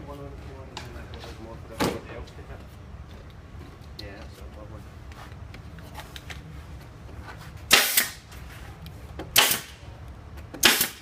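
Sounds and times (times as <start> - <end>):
staple gun firing: 9.4 - 9.8, 10.6 - 11.0.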